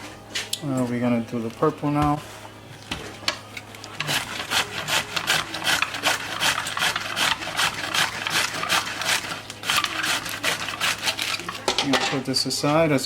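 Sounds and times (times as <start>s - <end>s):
cabbage slicing on mandoline: 3.9s - 11.7s.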